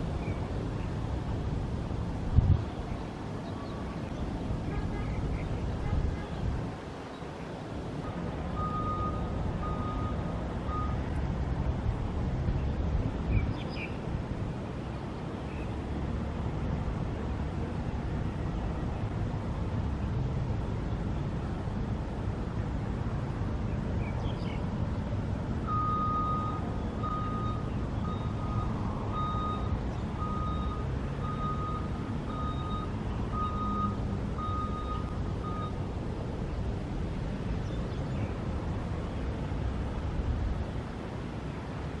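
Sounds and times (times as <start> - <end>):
short electronic beeps: 8.6 - 11.0, 25.7 - 35.8.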